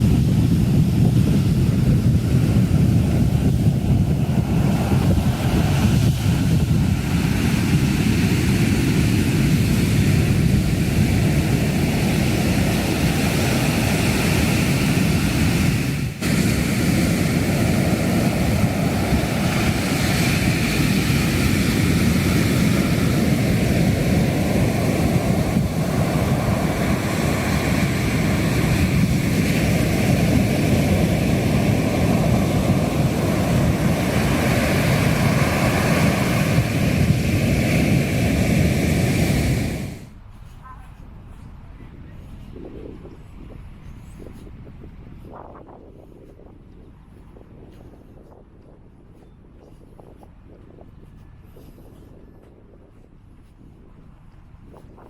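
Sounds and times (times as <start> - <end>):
wind on microphone: 0.0 - 55.0
surf breaking: 3.4 - 40.1.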